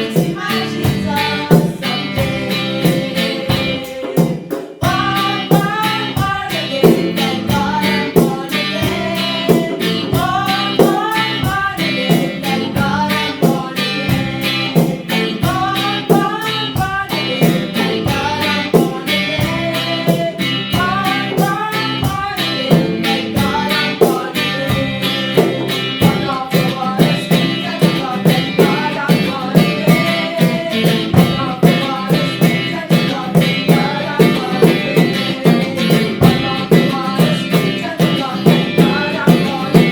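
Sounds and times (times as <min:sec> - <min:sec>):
guitar: 0:00.0 - 0:39.9
person singing: 0:00.0 - 0:39.9
steady beat: 0:21.5 - 0:39.9.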